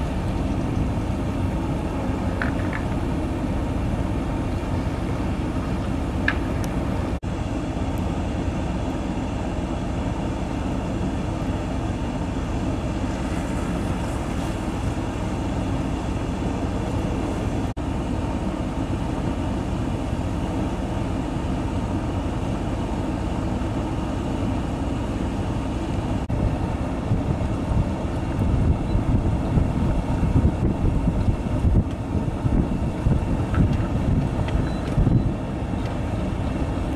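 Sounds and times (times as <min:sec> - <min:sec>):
wind gusts buffeting microphone: 0:00.0 - 0:07.2, 0:26.2 - 0:36.9
blizzard wind roaring: 0:00.0 - 0:36.9.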